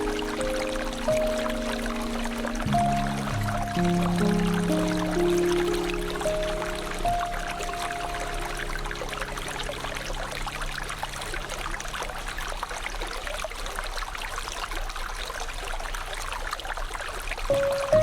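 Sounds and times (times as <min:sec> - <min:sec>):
held low music tones: 0:00.0 - 0:12.4
shallow river trickling: 0:00.0 - 0:18.0.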